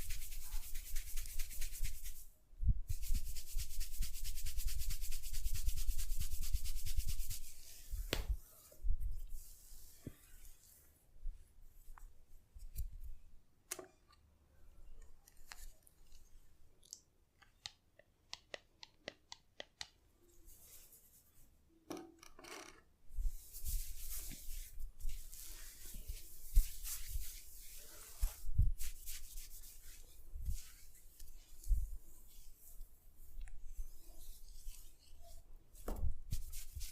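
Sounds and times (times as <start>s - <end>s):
hair rustling against scalp: 0.0s - 2.3s, 2.9s - 10.8s, 23.2s - 36.9s.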